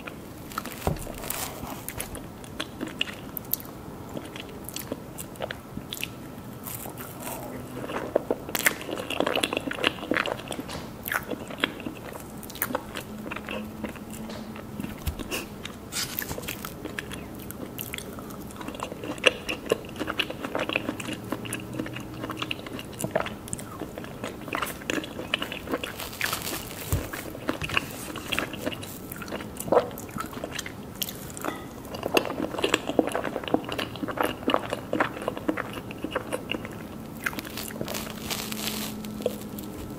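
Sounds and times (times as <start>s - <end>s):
cake being bitten and chewed: 0.0s - 39.9s.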